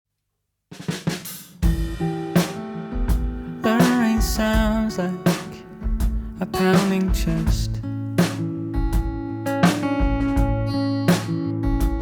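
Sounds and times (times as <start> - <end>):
drum kit: 0.7 - 12.0
guitar: 1.6 - 12.0
person singing: 3.6 - 7.8.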